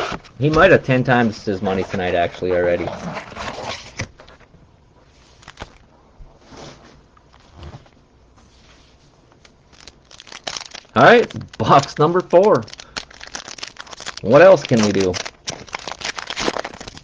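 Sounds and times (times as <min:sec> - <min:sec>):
trading cards and packaging rustling: 0:05.1 - 0:05.8, 0:08.5 - 0:17.0.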